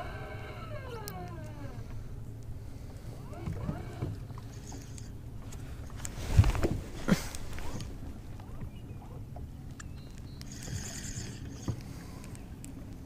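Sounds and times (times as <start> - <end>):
boat motor humming: 0.0 - 13.0.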